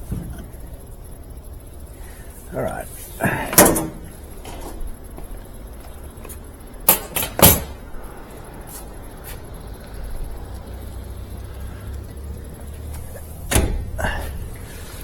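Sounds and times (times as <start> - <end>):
sharp knocks and clunks: 0.0 - 0.6, 3.3 - 4.8, 13.4 - 14.2
low steady hum: 0.0 - 15.0.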